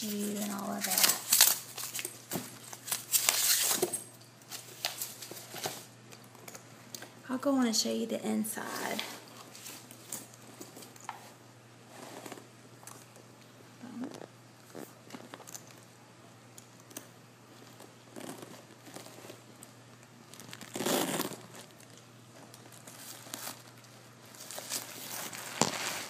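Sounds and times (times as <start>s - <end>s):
tissue paper crinkling: 0.0s - 3.9s, 20.2s - 26.0s.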